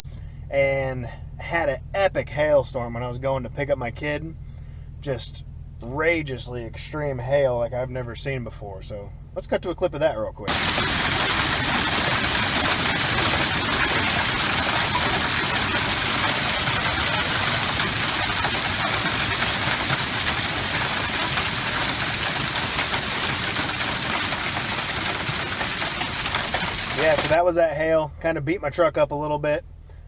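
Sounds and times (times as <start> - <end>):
hail pelting a truck: 10.5 - 27.5.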